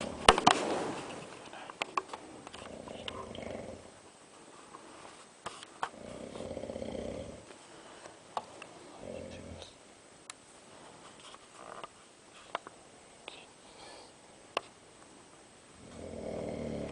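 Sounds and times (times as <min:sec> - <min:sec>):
man snoring heavily: 0:02.7 - 0:03.9, 0:05.9 - 0:07.4, 0:15.8 - 0:16.9
breathing: 0:07.6 - 0:08.2, 0:13.6 - 0:14.2.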